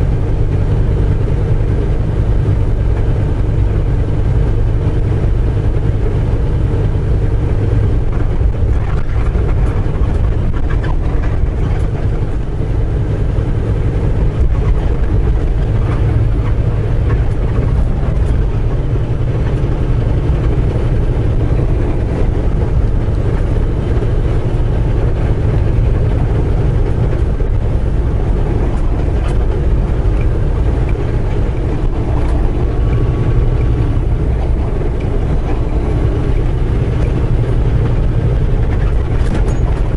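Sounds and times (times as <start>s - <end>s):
truck engine and road drone: 0.0s - 39.9s
faint clicks and rattles: 8.0s - 12.8s, 13.8s - 39.9s.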